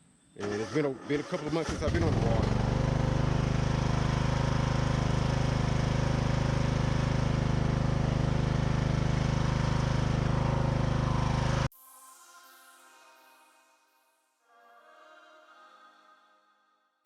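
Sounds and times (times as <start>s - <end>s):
small engine idling: 0.4s - 11.7s.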